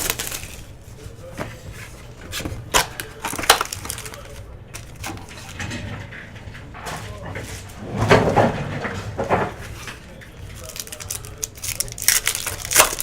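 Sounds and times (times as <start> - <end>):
packaging tearing and crinkling: 0.0 - 0.7, 2.4 - 5.3, 10.4 - 13.0.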